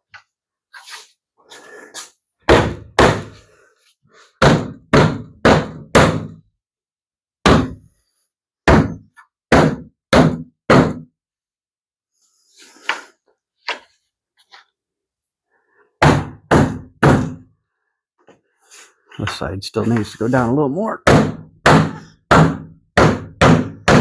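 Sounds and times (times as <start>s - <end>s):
plastic sections being pounded: 2.4s - 3.4s, 4.4s - 6.5s, 7.4s - 7.9s, 8.6s - 11.2s, 16.0s - 17.5s, 21.0s - 24.0s.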